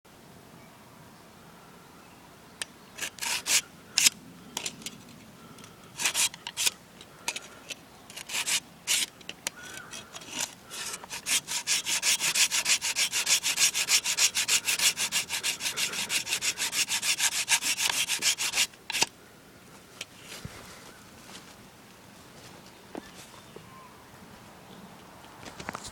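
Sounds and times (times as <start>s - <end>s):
hand saw cutting wood: 3.0s - 4.2s, 6.0s - 6.8s, 8.1s - 9.1s, 9.8s - 19.1s.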